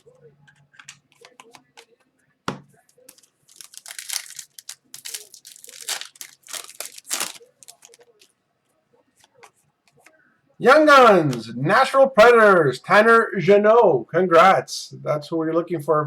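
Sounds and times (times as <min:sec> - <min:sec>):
foil wrapper tearing and crinkling: 0:03.1 - 0:08.2.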